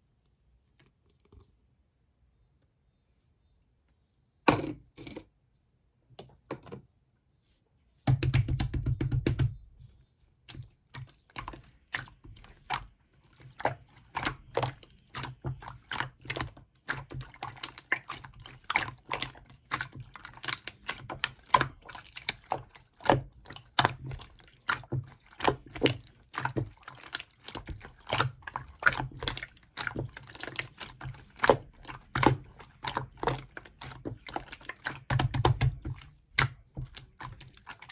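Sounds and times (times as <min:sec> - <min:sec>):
slime squishing: 0:10.4 - 0:37.9
slime clicking and popping: 0:28.1 - 0:35.8.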